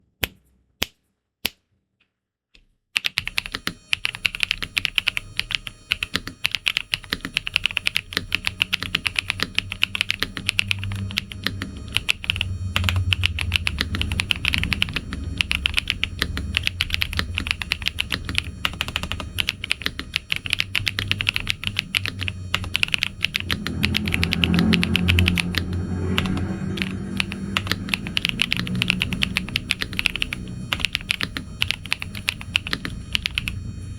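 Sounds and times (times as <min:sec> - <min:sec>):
mechanical keyboard typing: 0:03.0 - 0:33.6.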